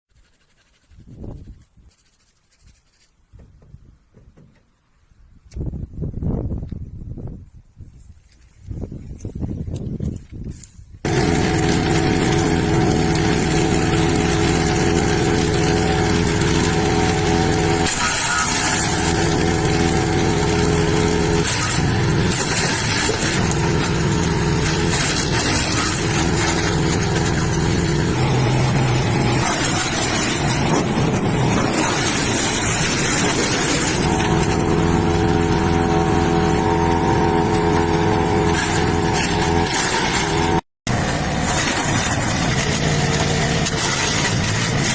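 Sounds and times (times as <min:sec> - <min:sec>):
wood chipper running: 0:11.0 - 0:44.9.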